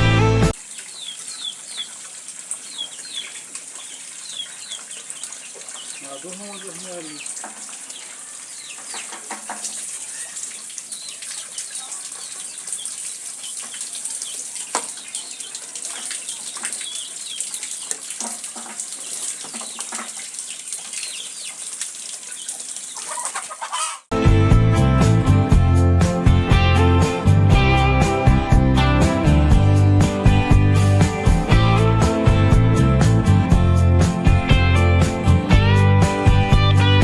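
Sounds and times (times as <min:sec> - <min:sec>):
water running at a sink: 0:00.6 - 0:23.8
faint bird calls: 0:10.0 - 0:18.1.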